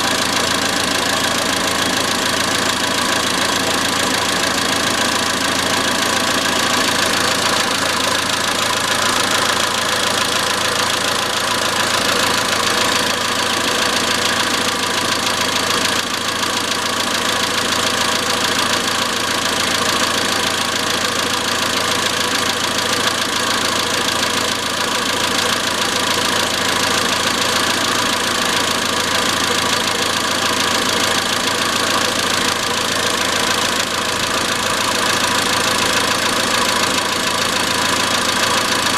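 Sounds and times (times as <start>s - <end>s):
car engine running: 0.0s - 38.9s.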